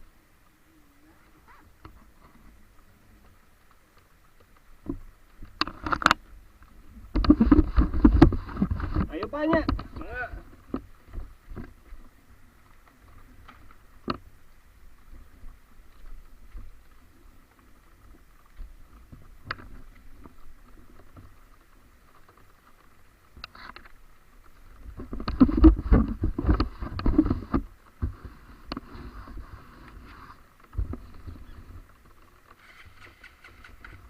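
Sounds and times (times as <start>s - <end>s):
motorcycle rumbling: 30.4s - 34.0s.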